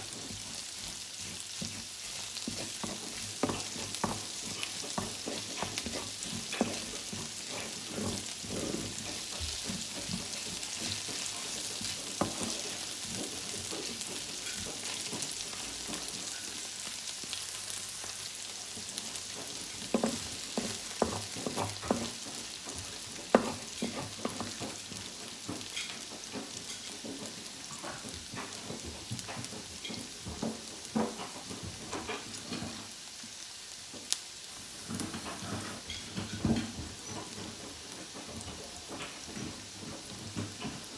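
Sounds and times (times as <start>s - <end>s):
utensil scraping a pan: 0.0s - 33.0s, 34.6s - 40.9s
food sizzling in hot oil: 0.0s - 40.9s.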